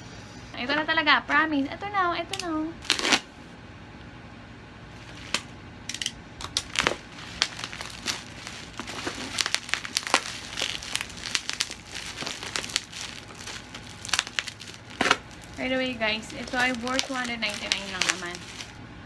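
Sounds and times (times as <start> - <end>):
packaging crinkling and tearing: 2.8 - 3.3, 5.0 - 18.8.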